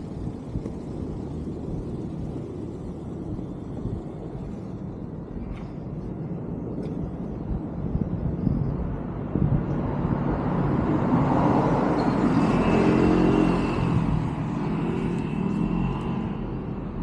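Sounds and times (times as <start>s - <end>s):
car passing by: 9.9s - 17.0s.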